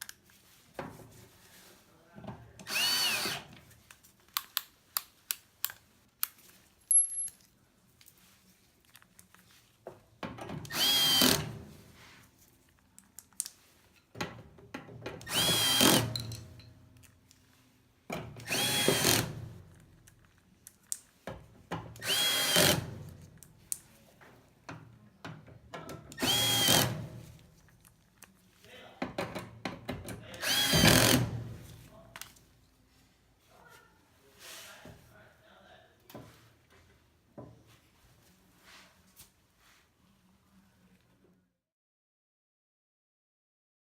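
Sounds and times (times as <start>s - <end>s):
power drill whining: 2.6s - 3.5s, 10.6s - 11.6s, 15.2s - 16.4s, 18.4s - 19.4s, 22.0s - 23.0s, 26.1s - 27.1s, 30.4s - 31.4s.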